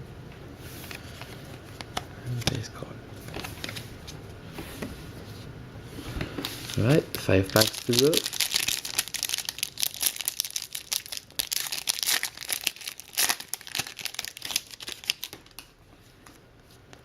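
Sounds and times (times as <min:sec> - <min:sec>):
wrapper torn and crinkled: 0:06.6 - 0:15.7.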